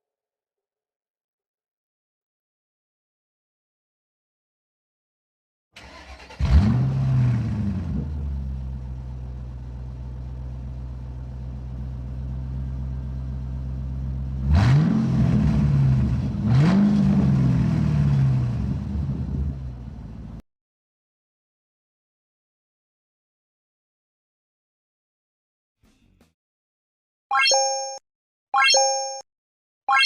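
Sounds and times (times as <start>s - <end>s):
vehicle engine starting and revving: 5.8s - 9.7s, 14.2s - 20.3s.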